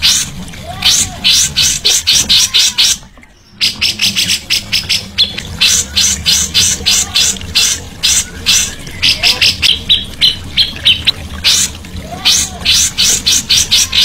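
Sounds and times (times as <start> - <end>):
songbird chattering: 0.9 - 11.7.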